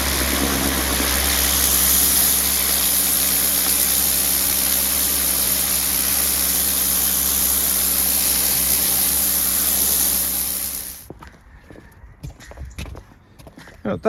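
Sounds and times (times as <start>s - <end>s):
pressure washer motor hum: 0.0s - 11.1s
water spray hissing: 0.0s - 11.1s.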